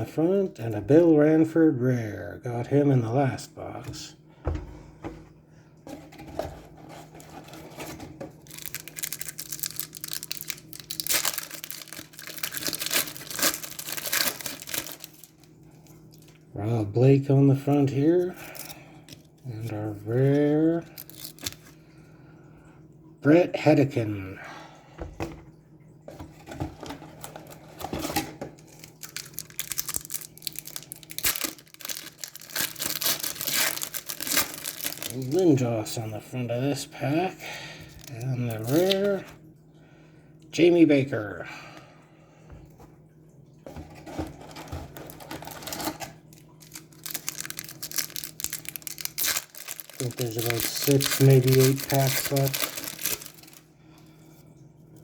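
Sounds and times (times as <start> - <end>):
wrapper tearing and crinkling: 6.9 - 16.3, 18.4 - 21.8, 27.3 - 35.6, 38.0 - 39.2, 44.1 - 53.7.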